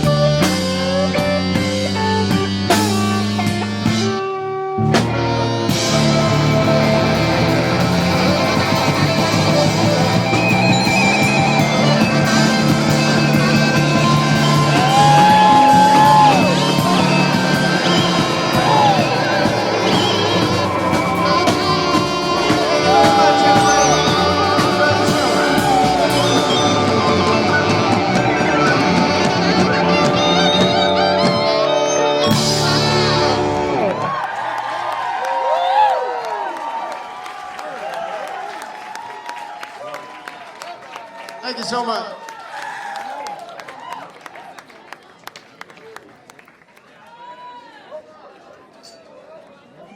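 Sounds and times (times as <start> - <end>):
electric guitar high note: 0.0 - 34.1
live rock band playing: 0.0 - 34.2
crowd yelling: 5.4 - 44.9, 47.0 - 49.9.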